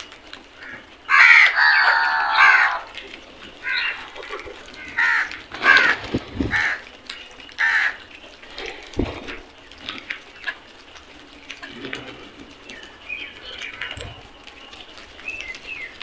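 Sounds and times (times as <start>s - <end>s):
crows cawing: 0.6s - 3.0s, 3.6s - 6.9s, 7.6s - 8.1s.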